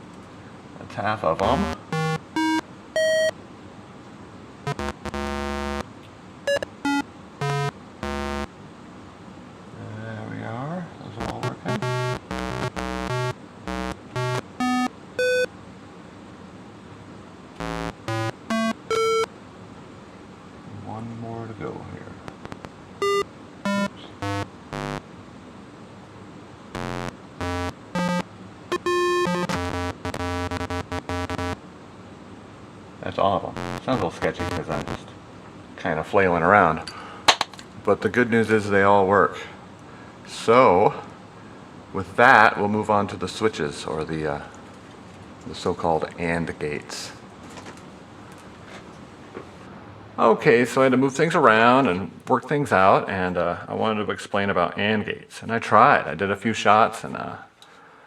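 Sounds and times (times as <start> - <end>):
electronic keyboard tones: 1.4 - 3.3, 4.7 - 5.8, 6.5 - 8.5, 11.2 - 15.5, 17.6 - 19.3, 22.3 - 25.0, 26.8 - 31.6, 33.6 - 35.0.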